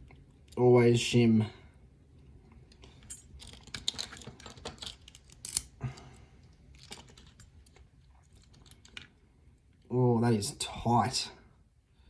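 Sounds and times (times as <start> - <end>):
metallic clicks of lock and tools: 2.7 - 5.8, 6.8 - 9.1.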